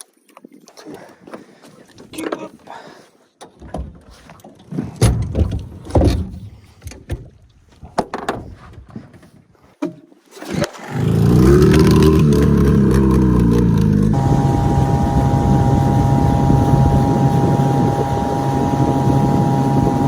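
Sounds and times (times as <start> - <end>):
outboard motor running: 10.8 - 20.0.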